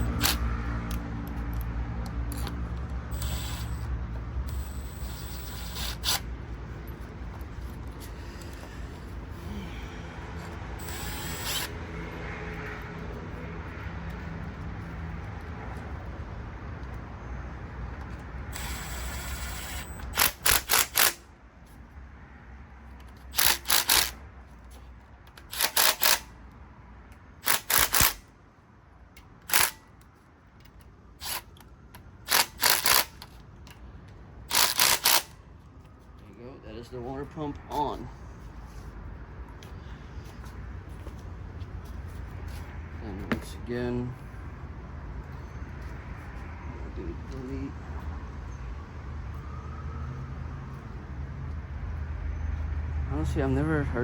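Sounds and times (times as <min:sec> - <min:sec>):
ratcheting wrench clicking: 0:00.0 - 0:06.3, 0:10.8 - 0:11.8, 0:18.5 - 0:21.2, 0:23.0 - 0:24.2, 0:25.3 - 0:26.3, 0:27.4 - 0:28.2, 0:29.2 - 0:30.0, 0:32.3 - 0:33.8, 0:34.5 - 0:35.4.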